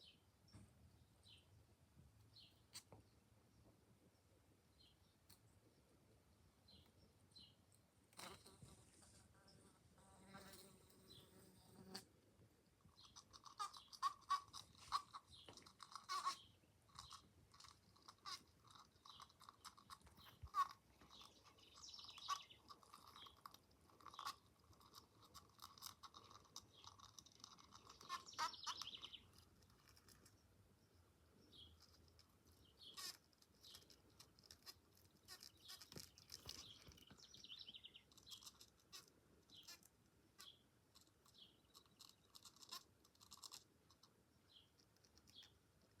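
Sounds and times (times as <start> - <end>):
bee buzzing at window: 8.1 - 12.2, 13.1 - 16.5.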